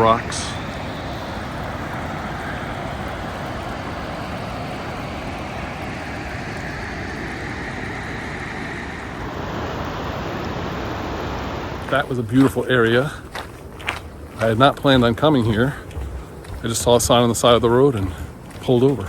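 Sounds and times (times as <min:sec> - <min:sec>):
stream rushing over rocks: 0:00.0 - 0:07.1.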